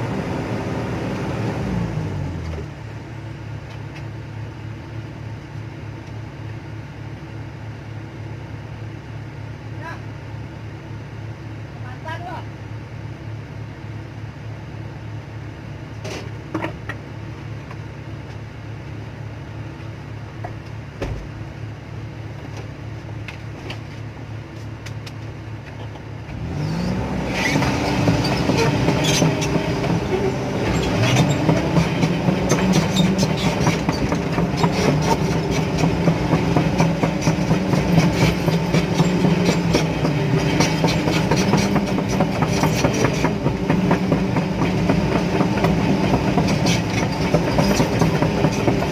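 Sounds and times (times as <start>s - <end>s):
diesel excavator engine: 0.0s - 48.9s
metallic clanking: 27.3s - 48.9s.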